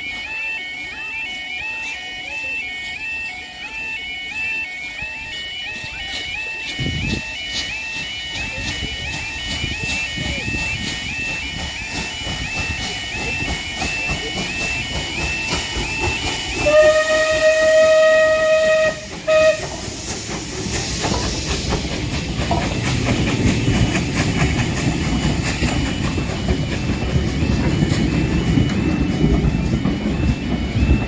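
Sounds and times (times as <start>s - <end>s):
steam locomotive whistle: 0.0s - 22.3s
train rumble: 4.8s - 31.0s
steam hiss: 7.1s - 29.8s.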